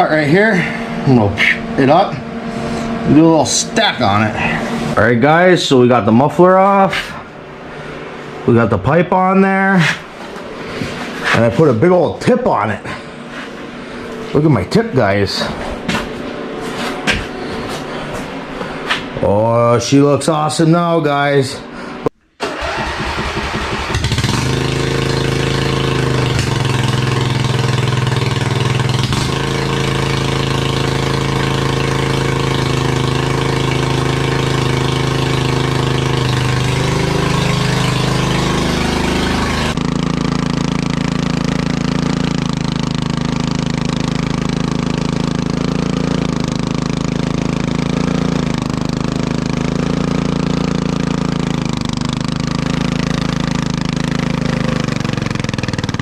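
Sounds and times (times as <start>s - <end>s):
lawnmower engine droning: 0.0s - 16.3s, 22.4s - 56.0s.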